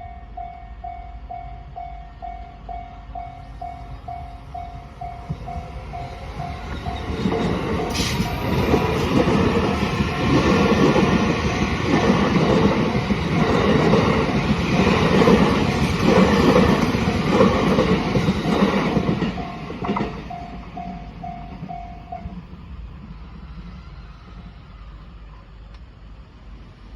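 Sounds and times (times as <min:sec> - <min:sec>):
level crossing warning bell: 0:00.0 - 0:22.4
train wheels rumbling on rails: 0:01.0 - 0:26.9.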